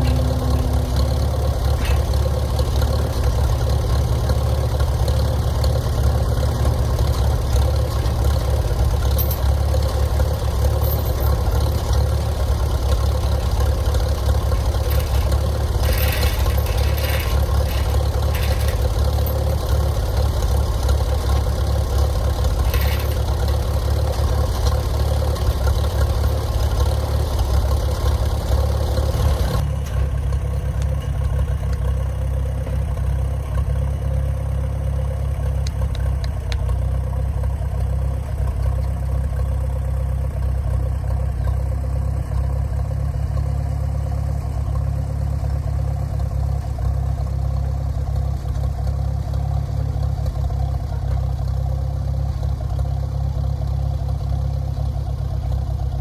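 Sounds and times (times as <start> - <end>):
bright loud engine layer: 0.0 - 31.4
tractor engine droning: 0.0 - 56.0.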